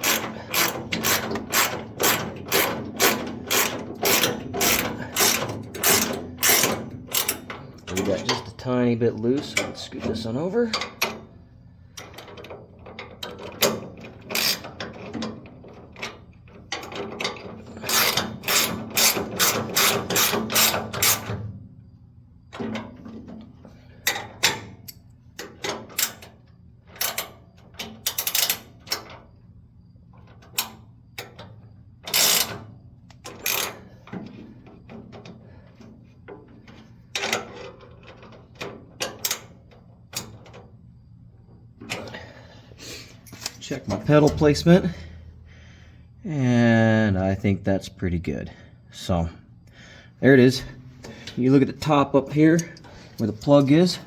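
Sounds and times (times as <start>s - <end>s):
ratchet wrench clicking: 0.0s - 8.1s, 13.2s - 15.0s, 17.8s - 21.3s, 28.0s - 29.0s, 32.0s - 33.9s.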